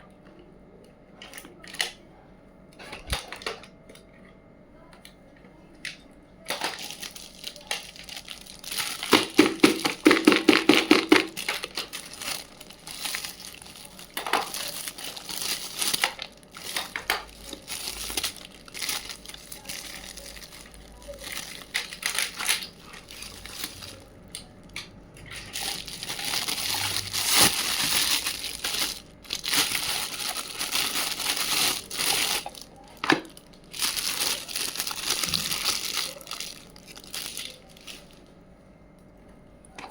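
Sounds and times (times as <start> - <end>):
plastic packaging crinkling: 6.5 - 38.3.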